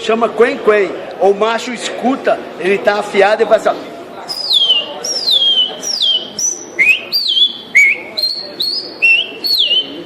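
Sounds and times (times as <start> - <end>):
man whistling bird song: 4.3 - 10.0.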